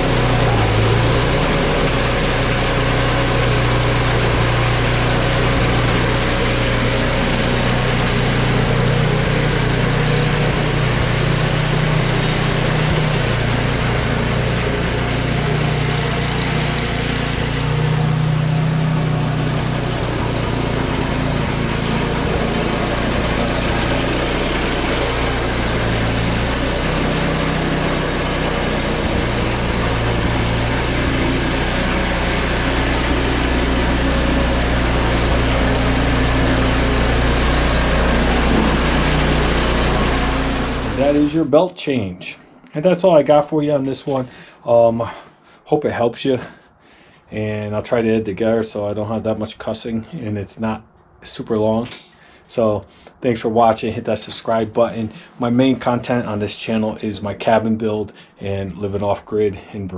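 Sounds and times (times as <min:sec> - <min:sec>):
snowblower engine running: 0:00.0 - 0:42.2, 0:44.2 - 0:45.2, 0:54.5 - 0:56.4.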